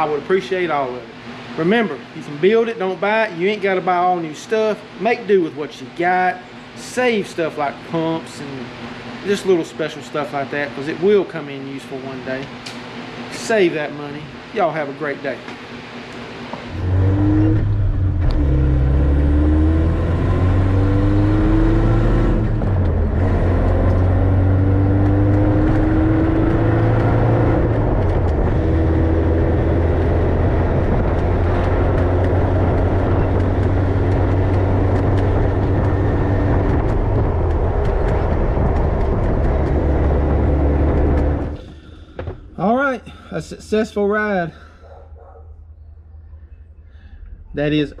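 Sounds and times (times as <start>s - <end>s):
road and wind noise: 0.0s - 48.0s
car engine revving through gears: 15.8s - 42.6s.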